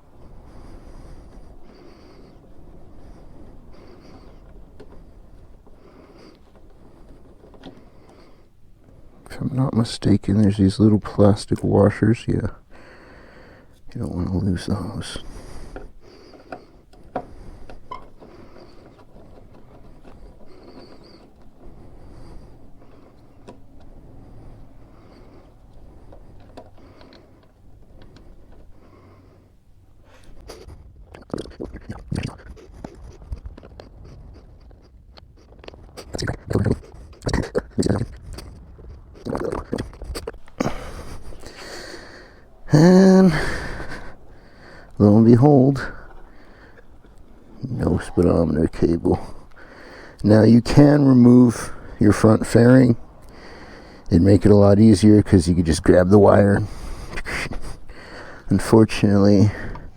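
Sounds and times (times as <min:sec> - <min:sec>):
rustling hiss: 0:00.0 - 0:59.9
light clicks of small parts: 0:15.7 - 0:29.2.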